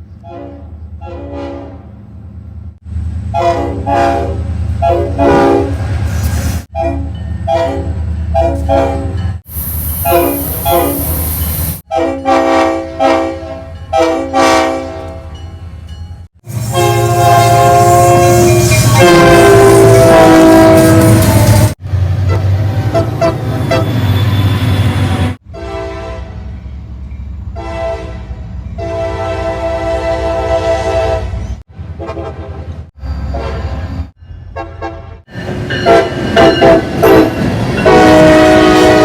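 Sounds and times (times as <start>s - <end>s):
locomotive air horn chords: 0.2s - 1.9s, 3.3s - 5.8s, 6.7s - 9.2s, 9.9s - 11.2s, 11.8s - 15.3s, 16.5s - 21.4s, 25.4s - 26.5s, 27.5s - 31.4s, 34.6s - 39.0s.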